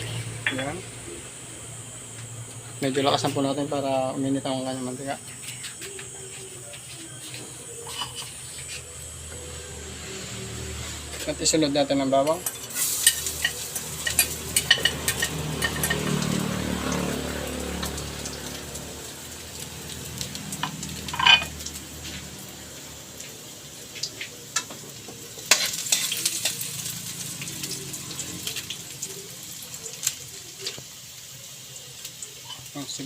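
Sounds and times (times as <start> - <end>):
garlic sizzling in oil: 0.0 - 33.0
spatula scraping a pan: 5.3 - 8.9, 25.5 - 26.6.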